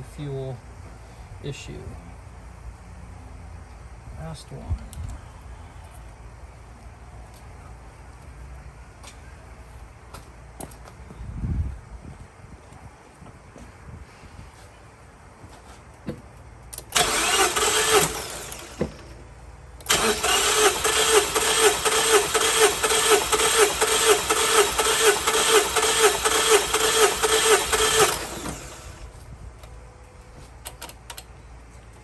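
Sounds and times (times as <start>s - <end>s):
engine starter cranking: 16.8s - 19.2s, 19.8s - 29.1s.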